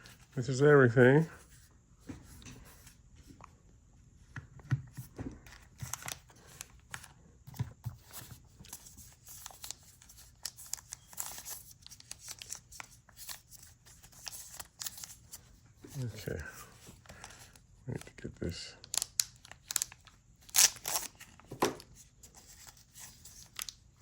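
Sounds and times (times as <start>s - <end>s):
packaging rustling and crinkling: 5.0s - 18.1s, 18.8s - 24.0s.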